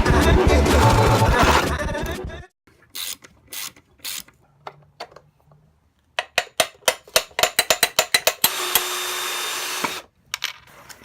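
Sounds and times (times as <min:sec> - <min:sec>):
power drill running: 0:08.4 - 0:10.1.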